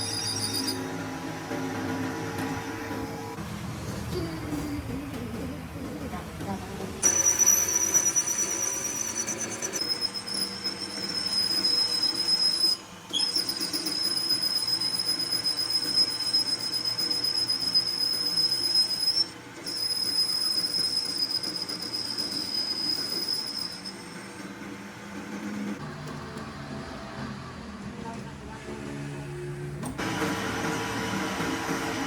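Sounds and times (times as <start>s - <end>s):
high-pitched squeal: 0.0s - 3.4s, 7.0s - 24.5s
machine tool cutting metal: 7.0s - 25.7s.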